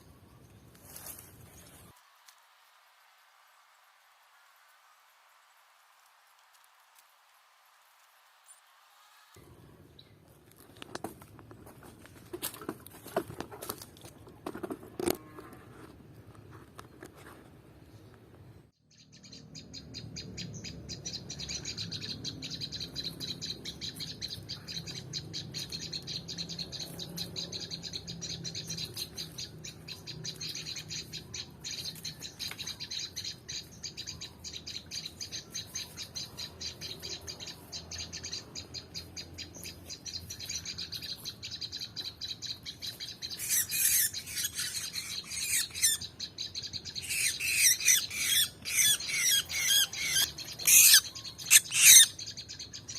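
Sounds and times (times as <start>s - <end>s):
birds chirping: 16.8s - 52.9s
harsh bird squawks: 43.3s - 46.0s, 47.0s - 52.2s.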